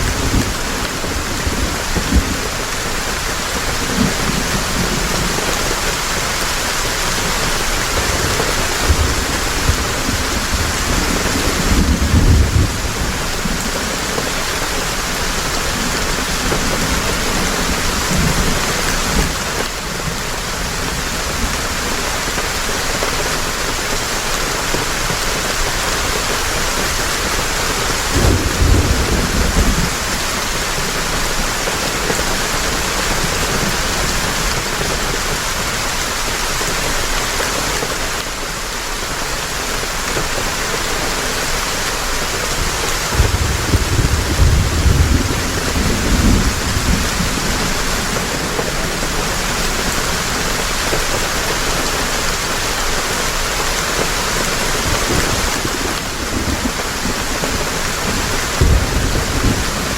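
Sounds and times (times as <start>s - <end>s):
rolling thunder: 0.0s - 22.0s, 28.0s - 34.7s, 42.5s - 51.1s, 54.8s - 59.9s
heavy rain falling: 0.0s - 59.9s.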